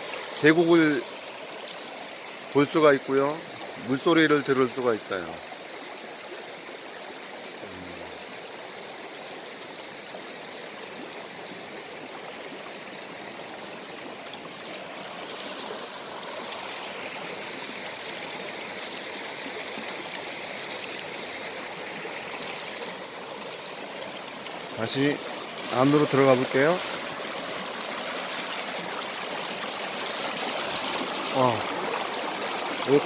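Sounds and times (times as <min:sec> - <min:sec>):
stream rushing over rocks: 0:00.0 - 0:33.0.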